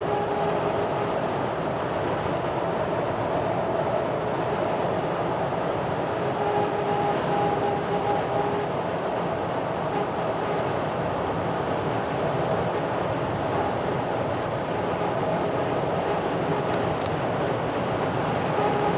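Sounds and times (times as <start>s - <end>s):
road noise: 0.0s - 18.9s
wind rush inside car cab: 0.0s - 18.9s
faint steady tones: 6.0s - 18.9s.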